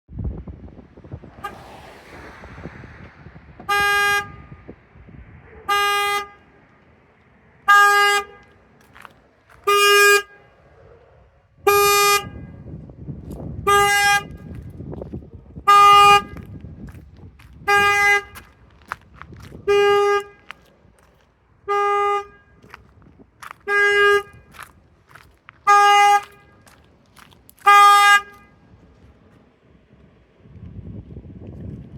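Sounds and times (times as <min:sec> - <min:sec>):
car alarm horn honks: 0:03.6 - 0:04.8, 0:05.7 - 0:06.6, 0:07.6 - 0:08.6, 0:09.6 - 0:10.6, 0:11.7 - 0:12.7, 0:13.6 - 0:14.5, 0:15.7 - 0:16.5, 0:17.6 - 0:18.4, 0:19.6 - 0:20.5, 0:21.7 - 0:22.7, 0:23.6 - 0:24.5, 0:25.6 - 0:26.7, 0:27.6 - 0:28.7.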